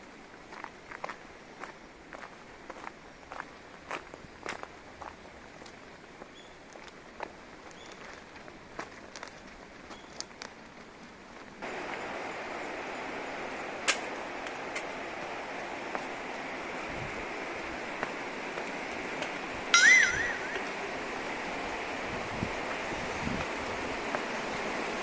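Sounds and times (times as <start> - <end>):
flowing river water: 11.6 - 25.0
wavering whistled call: 19.7 - 20.9.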